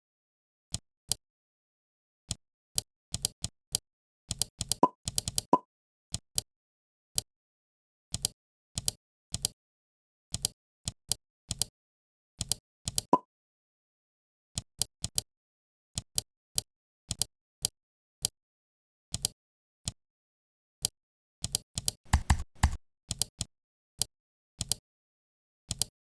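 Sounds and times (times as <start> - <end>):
mouse and keyboard clicks: 21.4 - 23.3.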